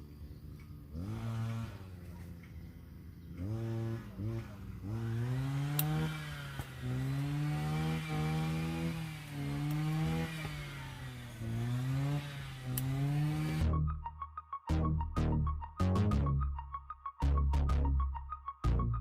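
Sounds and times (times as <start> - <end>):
small engine revving: 0.0 - 13.8.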